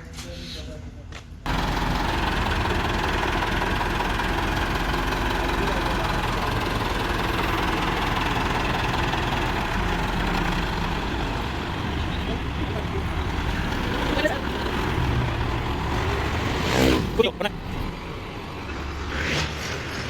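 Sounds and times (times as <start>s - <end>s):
tractor diesel engine running: 1.5s - 18.7s.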